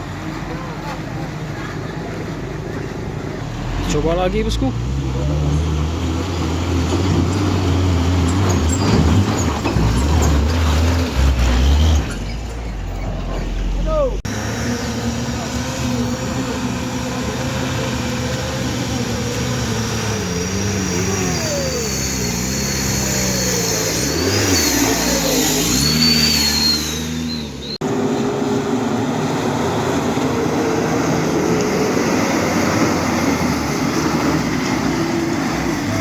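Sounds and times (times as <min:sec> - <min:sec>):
heavy truck engine revving: 0:00.0 - 0:36.0
steady engine noise: 0:12.7 - 0:36.0.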